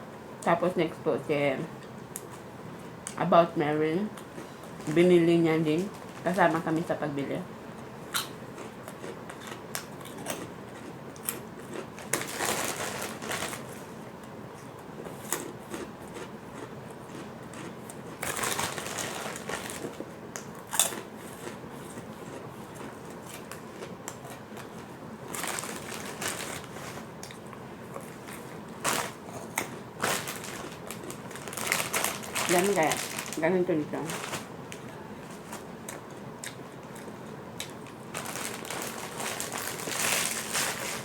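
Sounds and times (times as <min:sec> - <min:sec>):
crackers being chewed: 0:08.0 - 0:33.4, 0:34.2 - 0:41.0.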